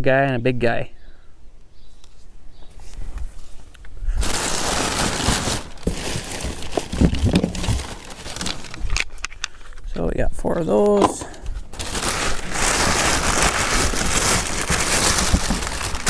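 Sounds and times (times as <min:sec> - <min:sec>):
packaging rustling and crinkling: 0:02.7 - 0:09.9, 0:10.9 - 0:16.0.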